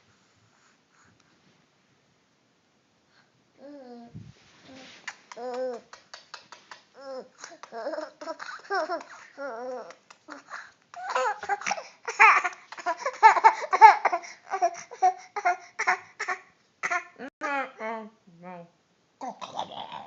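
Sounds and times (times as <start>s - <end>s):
small child laughing and babbling: 4.7s - 6.2s, 7.0s - 17.7s.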